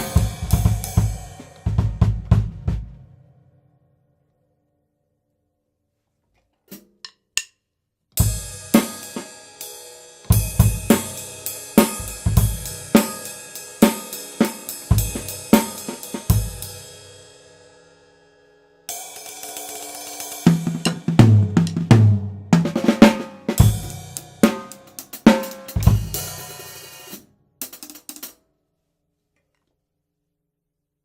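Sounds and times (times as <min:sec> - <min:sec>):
drum hits: 0:00.0 - 0:03.0, 0:20.5 - 0:26.2
drum stick clicks: 0:06.7 - 0:07.6.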